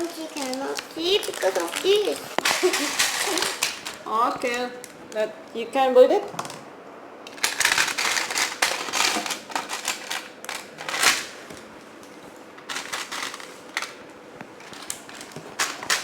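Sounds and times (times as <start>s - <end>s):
plastic pieces clicking and clattering: 1.2s - 4.0s, 7.3s - 11.3s.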